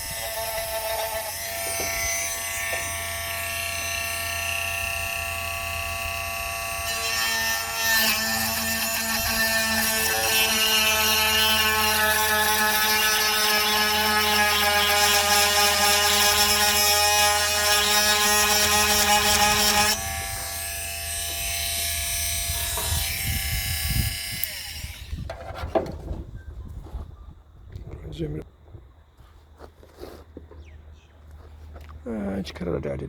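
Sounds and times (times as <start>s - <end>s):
grinder motor spinning down: 17.8s - 25.2s.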